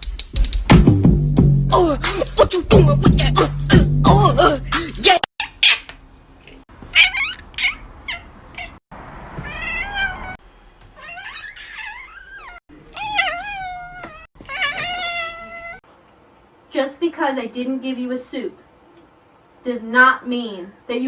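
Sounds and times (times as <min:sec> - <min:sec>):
cat meowing: 0:06.9 - 0:08.8, 0:09.4 - 0:10.4, 0:11.0 - 0:15.8.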